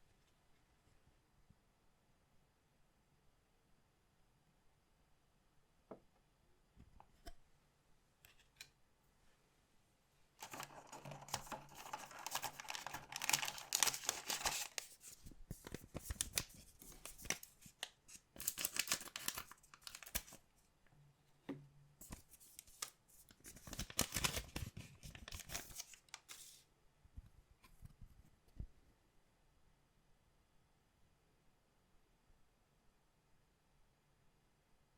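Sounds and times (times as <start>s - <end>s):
foil wrapper tearing and crinkling: 10.4s - 15.0s, 16.0s - 20.4s, 23.5s - 26.6s
cards clicking and rustling: 10.4s - 20.4s, 22.0s - 26.6s.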